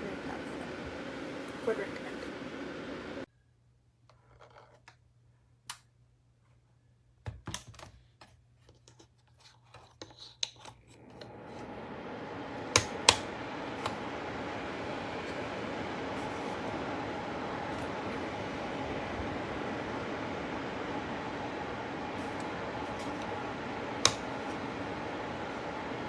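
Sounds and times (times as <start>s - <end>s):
heater fan rushing air: 0.0s - 3.3s, 10.8s - 26.0s.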